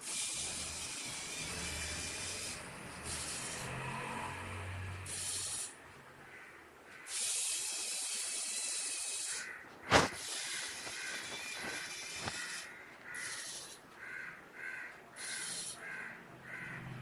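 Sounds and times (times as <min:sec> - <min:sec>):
servo probe mechanism running: 0:00.0 - 0:04.4, 0:05.0 - 0:05.8, 0:07.1 - 0:13.8
hissing noise: 0:07.2 - 0:13.8.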